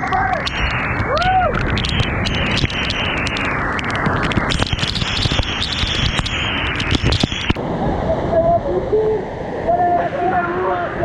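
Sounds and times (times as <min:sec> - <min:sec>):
microphone crackles and pops: 0:00.0 - 0:07.6
waterfall rushing: 0:00.0 - 0:11.0.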